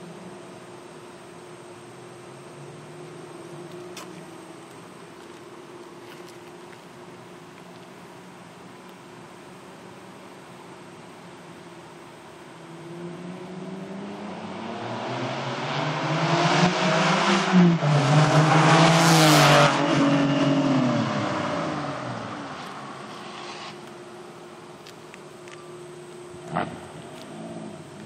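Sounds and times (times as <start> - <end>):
sports car accelerating past: 12.6 - 24.0, 26.4 - 28.0.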